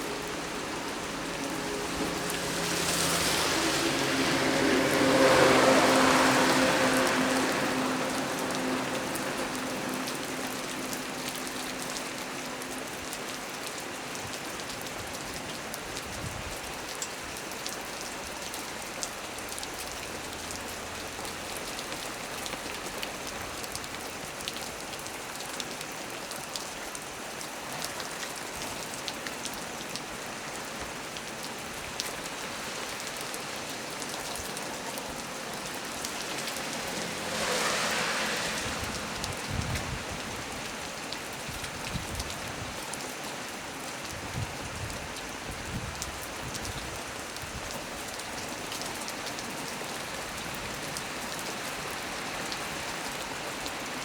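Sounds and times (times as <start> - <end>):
raindrops ticking: 0.0 - 16.0
heavy rain on a tree: 0.0 - 54.0.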